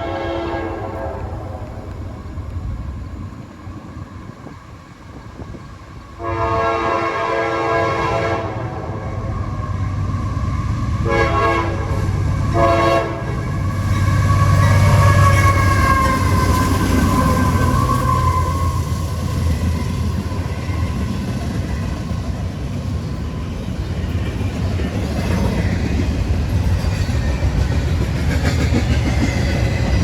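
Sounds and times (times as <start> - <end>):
locomotive air horn blasts: 0.0 - 1.6, 6.2 - 9.0, 11.0 - 16.6
locomotive rumble: 0.0 - 30.0.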